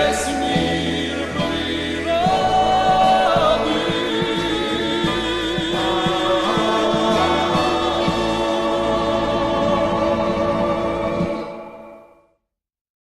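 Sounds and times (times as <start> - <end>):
song accompaniment: 0.0 - 12.4.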